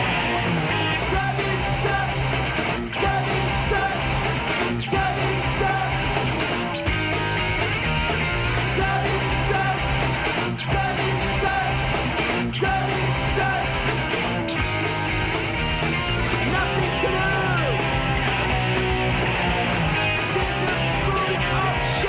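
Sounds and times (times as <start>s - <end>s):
punk rock song: 0.0s - 22.0s
person shouting vocals: 16.4s - 17.8s.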